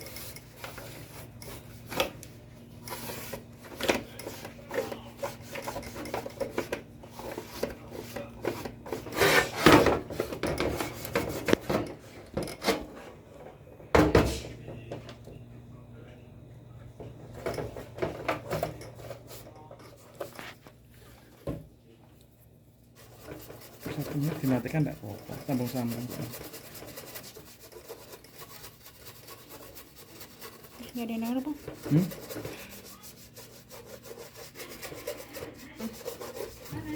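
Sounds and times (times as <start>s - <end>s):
hands rubbing and scraping equipment: 23.0s - 36.9s.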